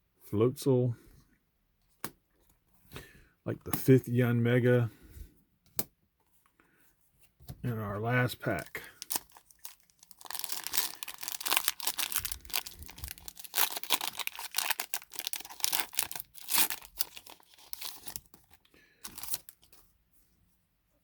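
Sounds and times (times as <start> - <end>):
foil wrapper tearing and crinkling: 8.6 - 19.8.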